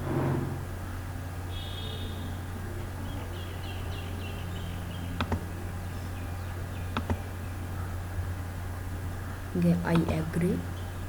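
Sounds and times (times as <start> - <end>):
steady low hum: 0.0 - 11.0
computer mouse double clicks: 5.2 - 5.4.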